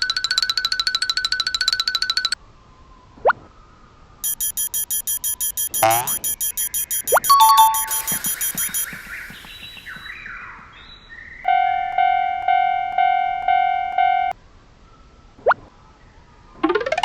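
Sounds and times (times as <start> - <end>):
electronic crossing bell dings: 4.2 - 10.0
cartoon sliding chirps: 4.2 - 10.2.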